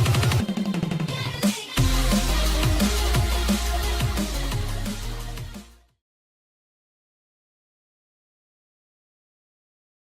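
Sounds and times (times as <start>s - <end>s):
electronic dance music: 0.0s - 6.0s.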